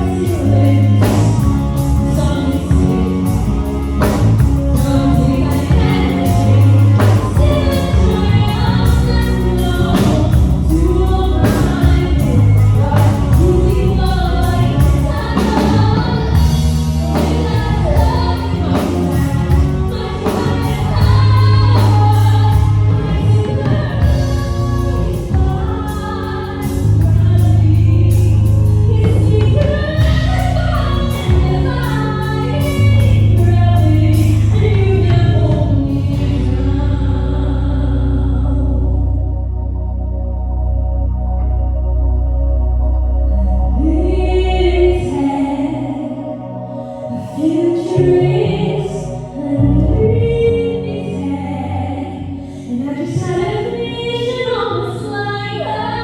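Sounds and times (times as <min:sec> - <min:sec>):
live band playing: 0:00.0 - 0:38.1
person singing a ballad: 0:00.0 - 0:56.0.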